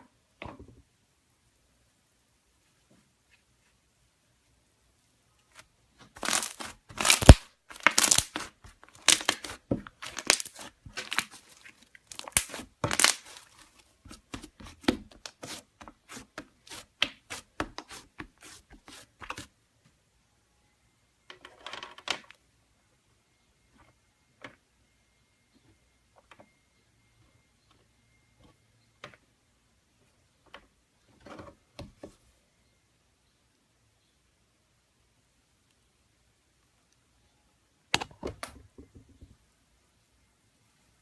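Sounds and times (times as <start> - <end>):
slime crackling pops: 6.2 - 8.5.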